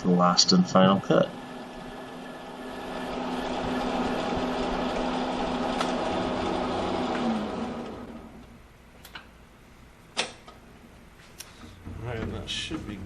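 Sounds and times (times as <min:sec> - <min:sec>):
lathe cutting noise: 0:01.1 - 0:08.4
metal lathe motor hum: 0:01.2 - 0:08.4.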